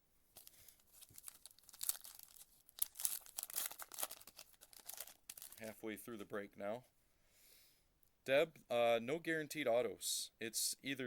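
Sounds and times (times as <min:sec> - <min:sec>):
foil wrapper crinkling and tearing: 0:00.4 - 0:05.7.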